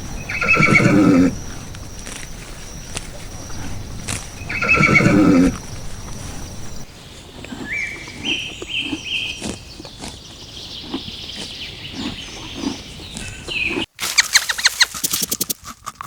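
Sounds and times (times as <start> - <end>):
short low animal calls: 0.0 - 6.8.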